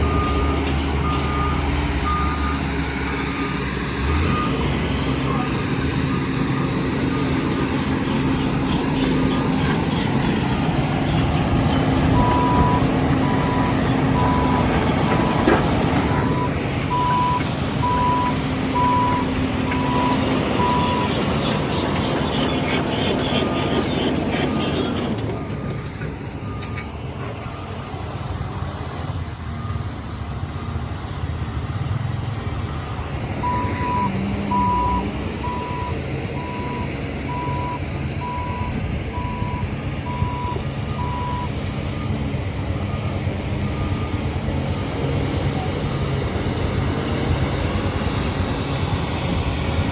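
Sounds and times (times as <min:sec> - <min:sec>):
reversing alarm beeping: 0:00.0 - 0:05.4, 0:12.1 - 0:22.0, 0:32.6 - 0:42.2
heavy diesel engines under load: 0:00.0 - 0:49.9.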